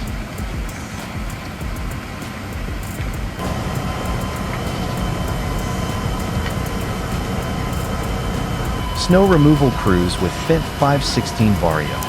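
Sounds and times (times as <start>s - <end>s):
steady whine: 2.8s - 12.0s
heavy vehicle engine rumbling: 3.4s - 12.0s.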